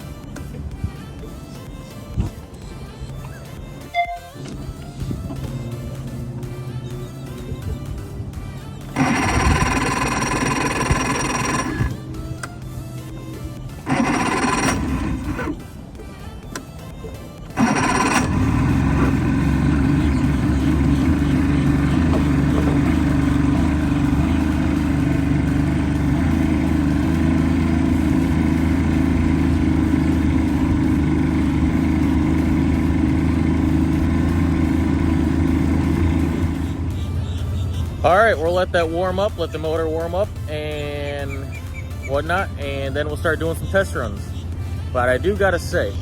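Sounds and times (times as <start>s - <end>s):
outboard motor idling: 4.4s - 46.0s.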